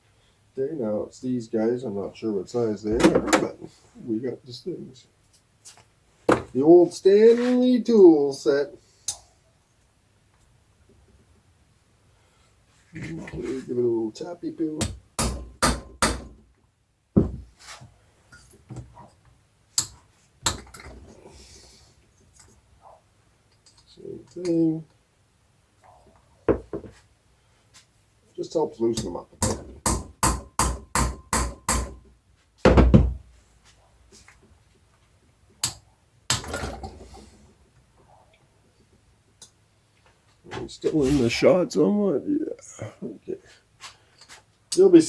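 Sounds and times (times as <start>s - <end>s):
heavy metal clunk: 2.9s - 3.5s
hammer knocking on metal: 14.8s - 16.4s, 17.2s - 17.5s, 29.4s - 32.0s.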